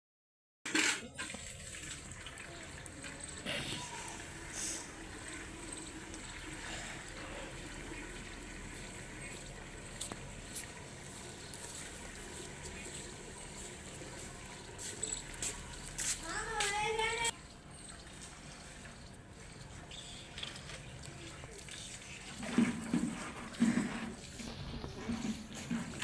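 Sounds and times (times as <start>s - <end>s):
pigeon splashing in water: 0.7s - 16.3s, 17.3s - 26.0s
water trickling: 1.0s - 26.0s.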